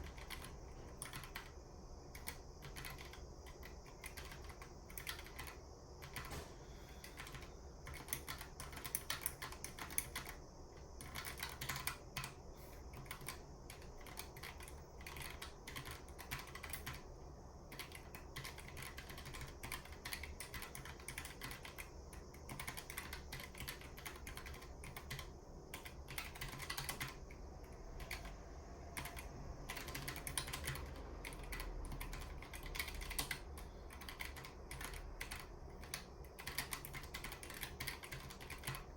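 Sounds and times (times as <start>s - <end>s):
mechanical keyboard key clicks: 29.0s - 38.9s.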